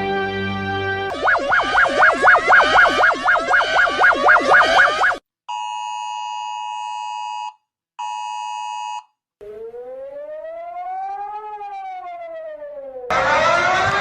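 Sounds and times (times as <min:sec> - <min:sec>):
harsh emergency alert tone: 0:01.1 - 0:05.2, 0:09.4 - 0:14.0
warning siren wailing: 0:01.1 - 0:05.2, 0:09.4 - 0:14.0.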